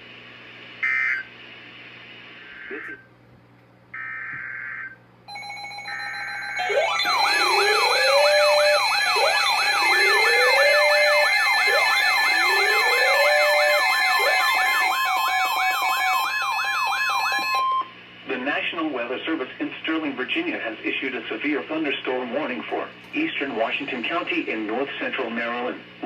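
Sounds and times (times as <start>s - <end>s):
electronic siren attention signal: 0.8s - 1.3s, 4.0s - 17.9s
buzzing data bursts: 5.3s - 17.6s.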